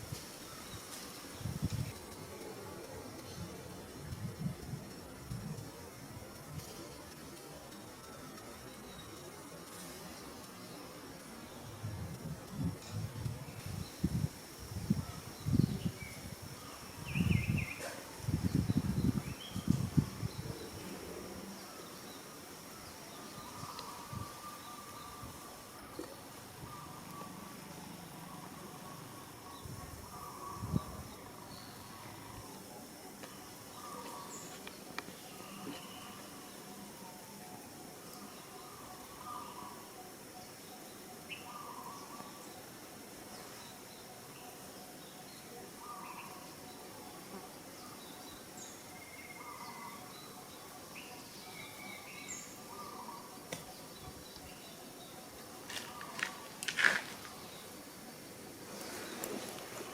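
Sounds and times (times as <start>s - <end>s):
insect calls: 0.0s - 59.9s.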